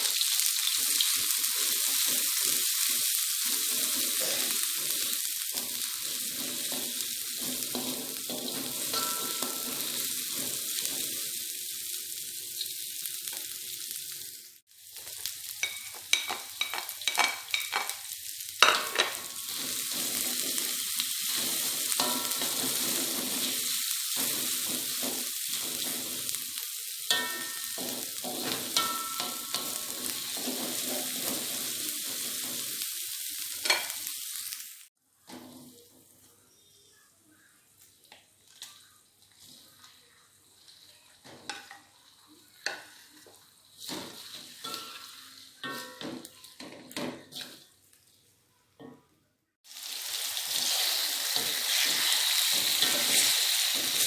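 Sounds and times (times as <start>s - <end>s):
food sizzling in hot oil: 0.0s - 35.0s, 37.7s - 46.6s, 49.6s - 54.0s
utensil scraping a pan: 50.6s - 54.0s.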